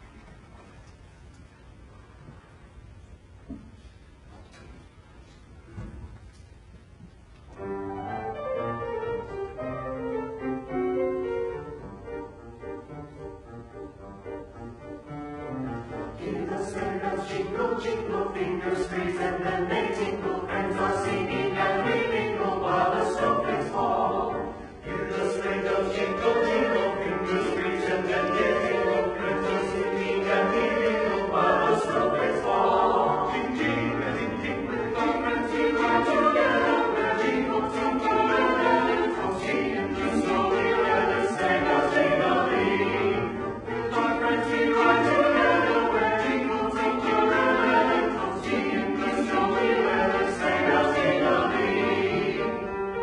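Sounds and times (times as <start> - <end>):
choir singing: 15.1 - 53.0.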